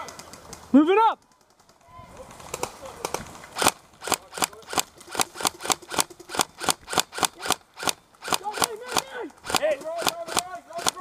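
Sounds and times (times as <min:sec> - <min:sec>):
airsoft rifle shots: 0:03.6 - 0:11.0.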